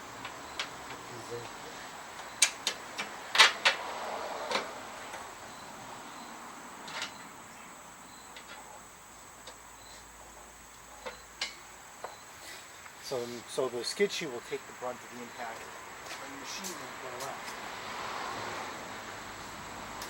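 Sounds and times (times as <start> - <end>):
metal clicks and clanks: 6.8 - 7.2.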